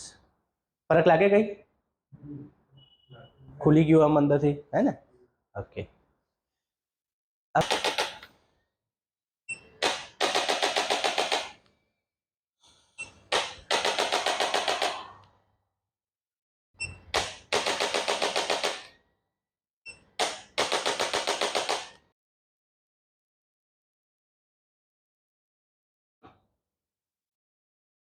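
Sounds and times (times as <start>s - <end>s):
short high beeps: 2.8s - 3.5s.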